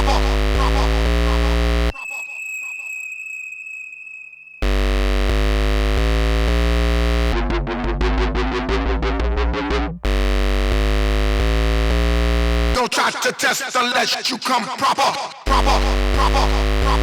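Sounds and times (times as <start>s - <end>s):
distorted synth bass: 0.0s - 1.9s, 4.6s - 12.8s, 15.5s - 17.0s
rapid synth notes: 0.0s - 2.8s, 4.6s - 12.8s.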